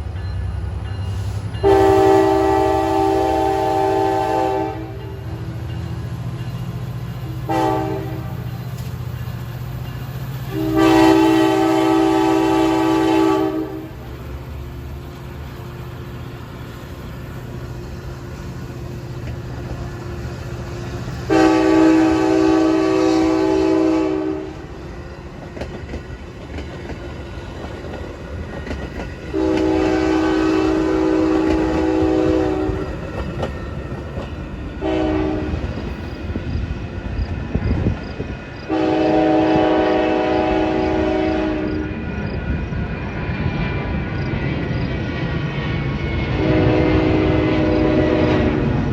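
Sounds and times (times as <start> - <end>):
locomotive air horn blasts: 1.6 - 5.2, 7.5 - 8.5, 10.5 - 14.1, 21.3 - 24.6, 29.3 - 32.9, 34.8 - 35.7, 38.7 - 41.9, 46.4 - 48.7.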